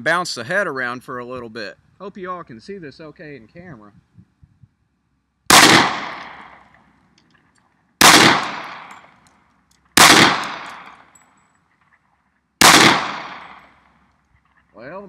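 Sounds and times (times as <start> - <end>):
pistol shots echoing: 5.5 - 6.7, 8.0 - 9.2, 10.0 - 11.2, 12.6 - 13.8.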